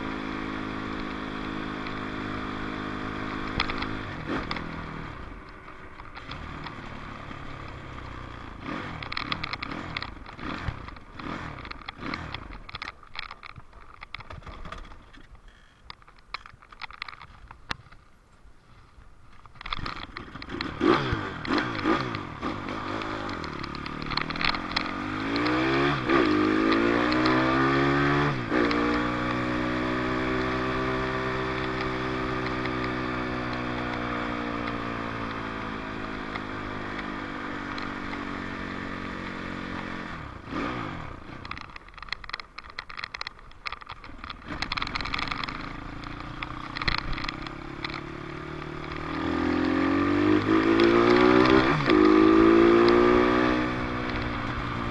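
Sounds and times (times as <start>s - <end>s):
dirt bike engine revving: 0.0s - 5.2s, 6.2s - 12.6s, 20.2s - 41.7s, 44.4s - 54.9s.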